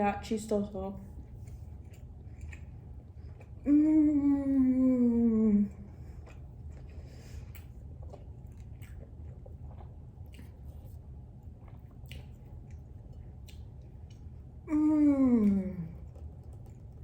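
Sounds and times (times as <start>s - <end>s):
steady low hum: 0.0s - 17.0s
person chewing food: 1.2s - 3.7s, 5.8s - 14.7s, 15.4s - 17.0s.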